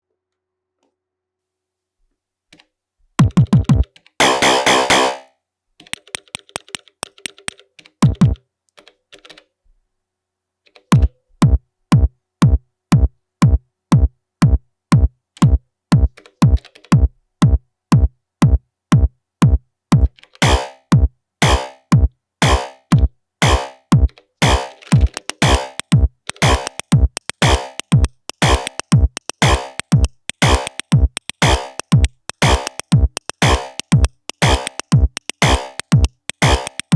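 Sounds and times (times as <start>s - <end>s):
synthesizer kick drum: 3.2s - 5.2s, 6.0s - 8.4s, 11.4s - 36.9s
hi-hat and snare hits: 4.2s - 5.2s, 6.0s - 7.5s, 20.4s - 36.9s.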